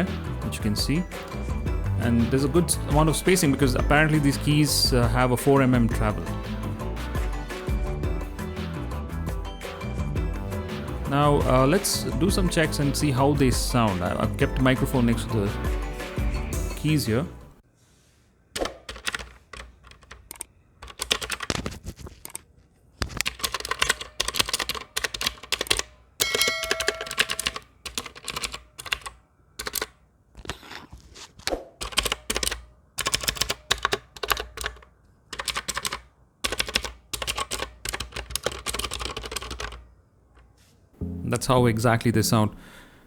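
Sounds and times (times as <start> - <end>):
typing on mechanical keyboard: 18.6 - 22.4, 23.0 - 26.0, 26.7 - 30.0, 31.8 - 39.9
brief ringing tone: 26.2 - 27.5.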